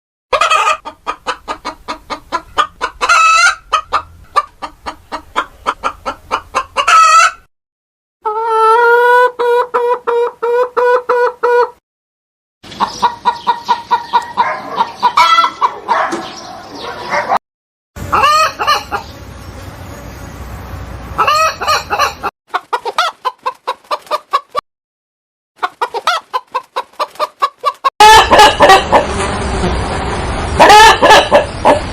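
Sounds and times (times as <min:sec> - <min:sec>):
chickens clucking: 0:00.3 - 0:07.5, 0:08.2 - 0:11.8, 0:12.7 - 0:17.4, 0:18.0 - 0:19.2, 0:21.2 - 0:24.6, 0:25.6 - 0:29.2, 0:30.6 - 0:31.9
rooster crowing: 0:28.0 - 0:29.0, 0:30.6 - 0:31.4.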